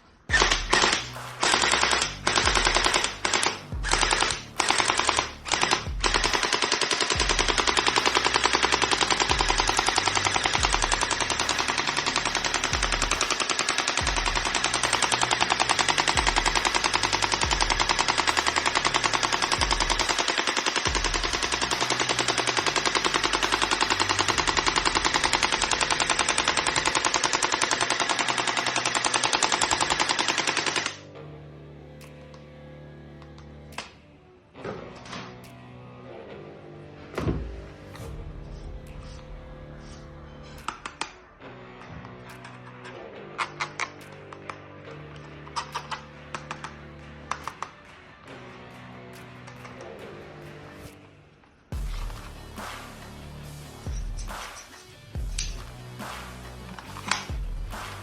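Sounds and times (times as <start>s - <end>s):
toy automatic rifle gunfire: 0.3s - 31.0s, 45.4s - 47.8s.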